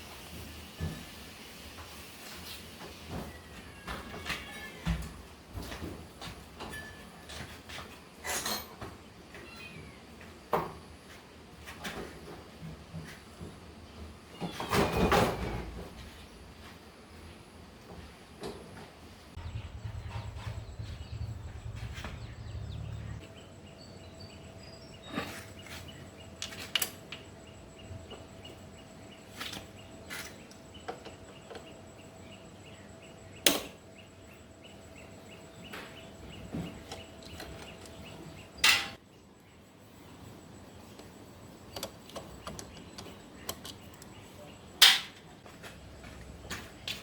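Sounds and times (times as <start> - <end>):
low motor hum: 19.4 - 23.9
scattered clicks and knocks: 40.9 - 44.2.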